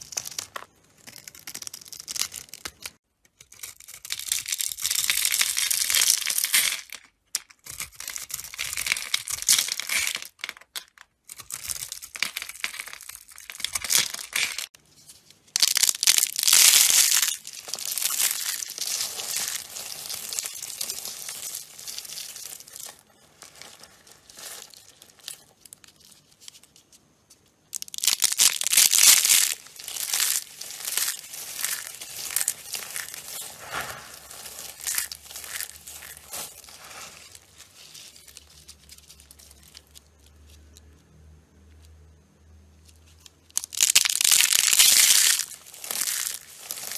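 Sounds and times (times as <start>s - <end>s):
knife scraping dry soap: 3.4s - 5.0s, 7.6s - 10.0s.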